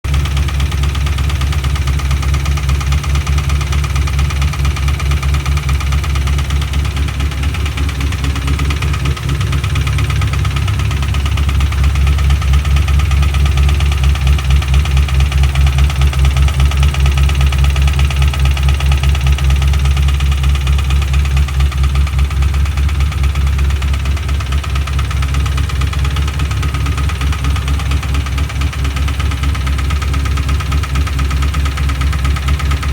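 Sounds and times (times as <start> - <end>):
engine knocking tap: 0.1 - 32.9.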